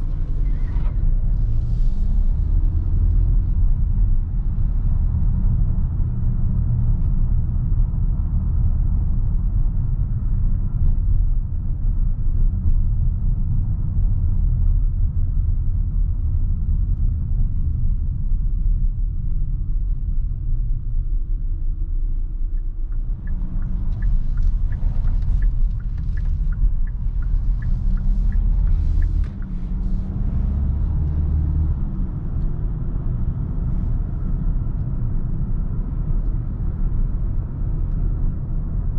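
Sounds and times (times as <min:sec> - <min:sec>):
diesel engine and road rumble: 0:00.0 - 0:38.9.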